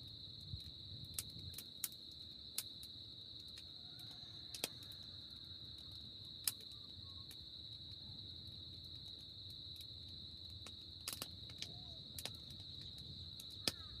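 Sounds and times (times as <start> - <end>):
campfire pops: 0.0 - 14.0
insect chirring: 0.0 - 14.0.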